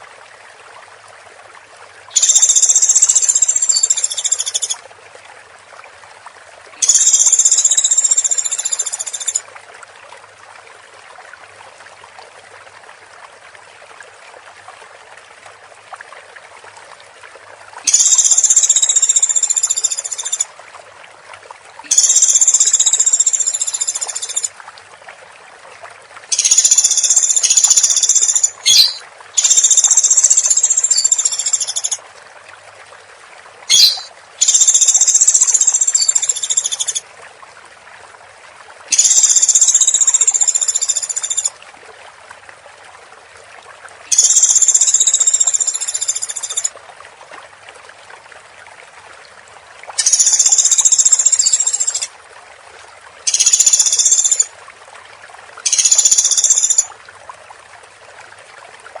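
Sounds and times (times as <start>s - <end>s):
woodpecker rattling calls: 26.4s - 32.0s, 33.7s - 37.0s, 53.3s - 54.4s, 55.7s - 56.9s
short sharp bird calls: 28.4s - 29.5s, 33.7s - 34.1s.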